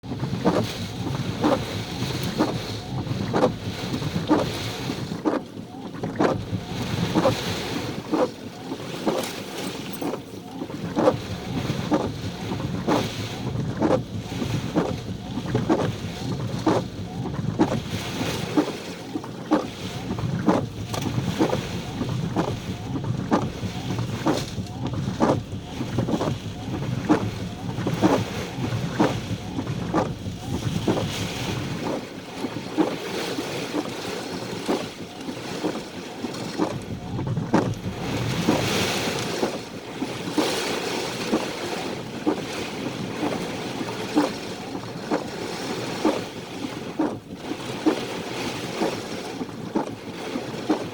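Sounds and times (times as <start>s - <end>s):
wind buffeting microphone: 0.0s - 50.9s.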